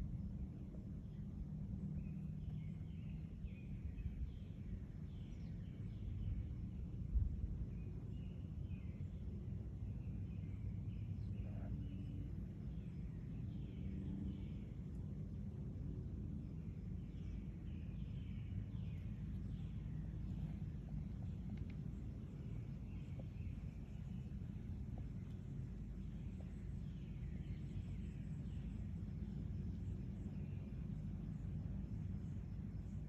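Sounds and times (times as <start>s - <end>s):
steady low rumble: 0.0s - 33.0s
small birds chirping: 16.5s - 33.0s.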